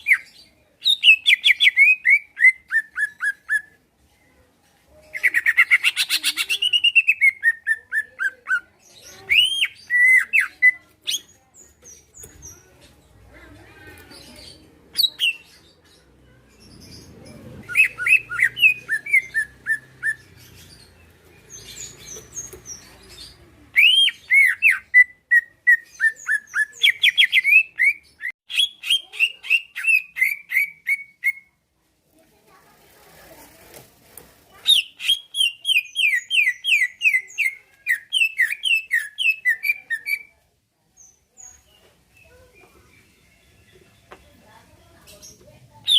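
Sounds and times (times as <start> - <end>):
bird singing whistled notes: 17.6 - 20.9, 34.7 - 40.3.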